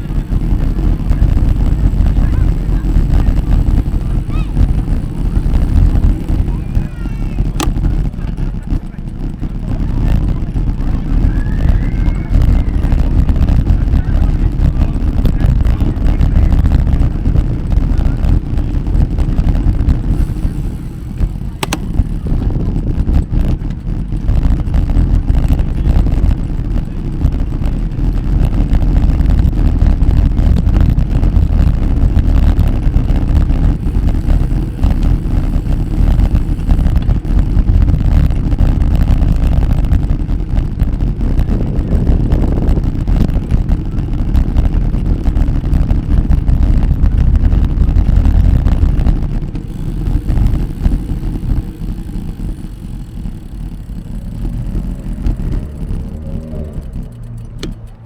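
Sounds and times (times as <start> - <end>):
wind buffeting microphone: 0.0 - 58.0
sharp click: 7.5 - 7.9, 20.2 - 22.3, 57.0 - 58.0.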